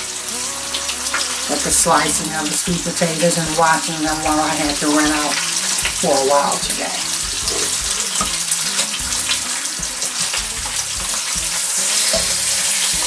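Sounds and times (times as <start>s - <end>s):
bacon sizzling in a pan: 0.0s - 13.0s
fat popping: 3.4s - 13.0s.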